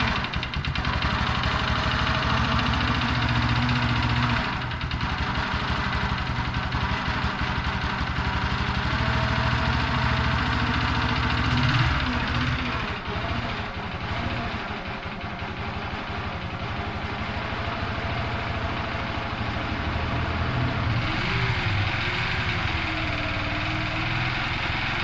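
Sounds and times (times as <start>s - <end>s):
motorcycle engine idling raspily: 0.0s - 19.8s.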